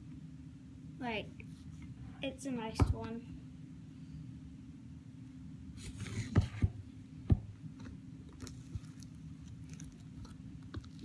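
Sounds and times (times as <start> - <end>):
slime crust crackling and popping: 7.8 - 11.0.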